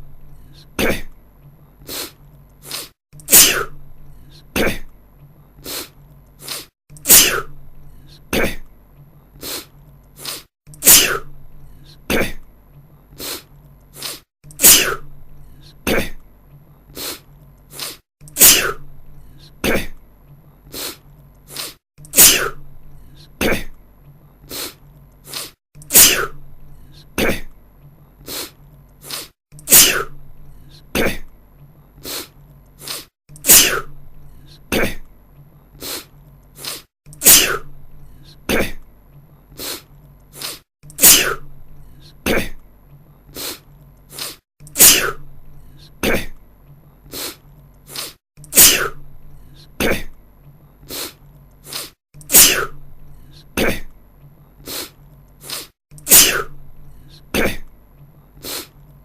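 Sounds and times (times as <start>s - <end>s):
man sneezing: 0.8s - 1.1s, 2.7s - 3.8s, 4.6s - 4.9s, 6.6s - 7.5s, 8.3s - 8.6s, 10.3s - 11.3s, 12.1s - 12.4s, 14.1s - 15.1s, 15.8s - 16.2s, 17.8s - 18.8s, 19.6s - 20.0s, 21.6s - 22.6s, 23.4s - 23.7s, 25.4s - 26.4s, 27.2s - 27.5s, 29.2s - 30.2s, 31.0s - 31.2s, 32.9s - 33.9s, 34.7s - 35.0s, 36.7s - 37.7s, 38.5s - 38.8s, 40.4s - 41.4s, 42.2s - 42.6s, 44.2s - 45.2s, 46.0s - 46.3s, 48.0s - 49.0s, 49.8s - 50.1s, 51.7s - 52.8s, 53.6s - 53.9s, 55.5s - 56.5s, 57.3s - 57.6s.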